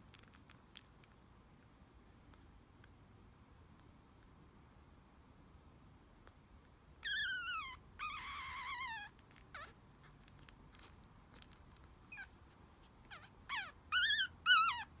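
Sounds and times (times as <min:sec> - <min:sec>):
puppy whimpering: 0:07.0 - 0:15.0.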